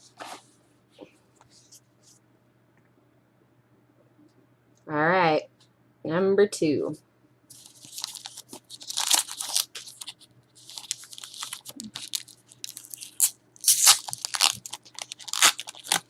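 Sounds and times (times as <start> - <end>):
plastic wrapper torn and crinkled: 7.5 - 16.0.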